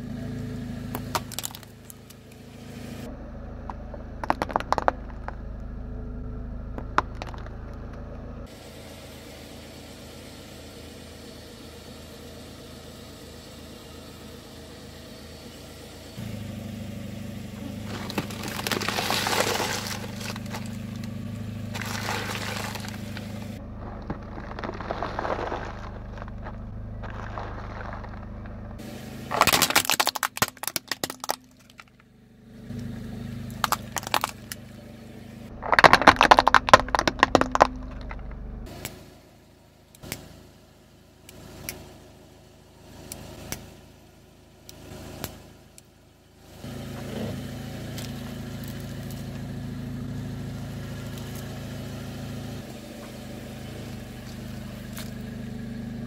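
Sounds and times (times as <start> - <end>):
car engine humming: 0.0 - 56.0
tyre crushing crunchy objects: 1.0 - 2.2, 3.7 - 5.4, 17.6 - 32.0, 32.9 - 34.6, 35.5 - 38.4.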